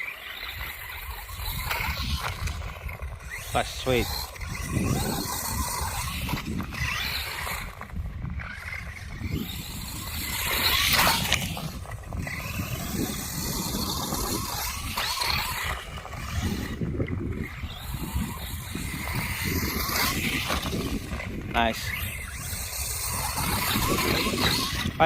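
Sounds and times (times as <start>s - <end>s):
rc truck motor whining: 0.0s - 25.0s
wind rumble on microphone: 0.2s - 25.0s.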